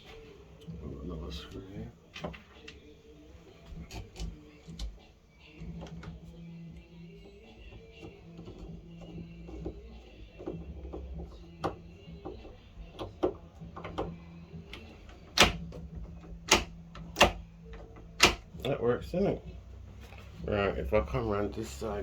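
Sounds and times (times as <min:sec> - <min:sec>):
metal door lock clicks and taps: 0:15.3 - 0:15.7, 0:18.2 - 0:18.5.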